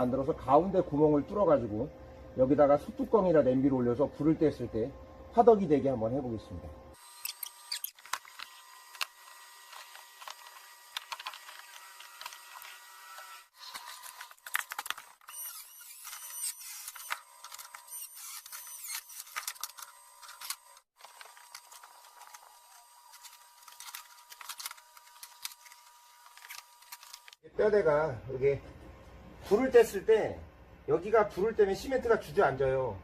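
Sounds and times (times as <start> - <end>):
hand tools clicking and scraping: 7.1 - 27.4.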